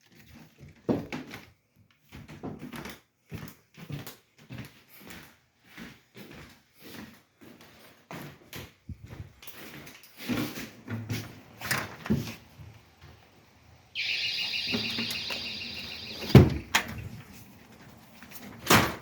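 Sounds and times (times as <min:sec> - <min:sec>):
door banging shut: 0:14.0 - 0:17.0
door squeaking: 0:14.0 - 0:17.0.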